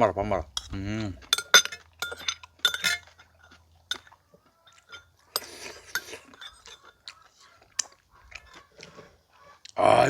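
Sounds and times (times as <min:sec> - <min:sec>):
spoon clinking on bowl: 0:00.6 - 0:07.0
chewing: 0:00.6 - 0:09.8.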